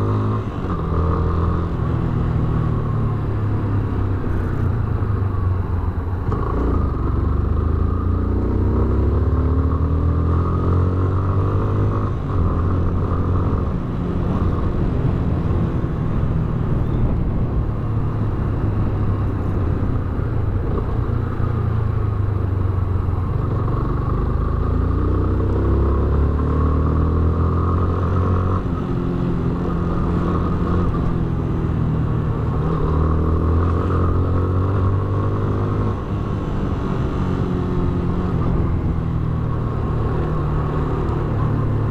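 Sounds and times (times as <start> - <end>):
motorcycle engine accelerating: 0.0 - 41.9.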